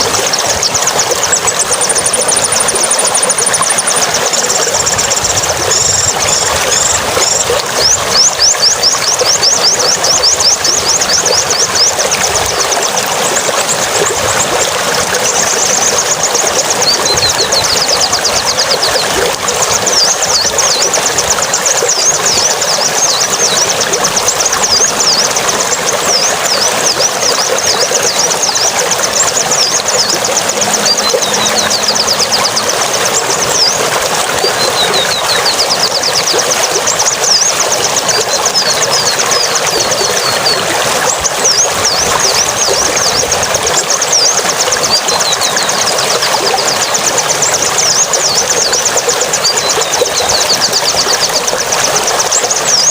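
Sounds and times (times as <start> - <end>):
small bird chirping: 15.1 - 43.3.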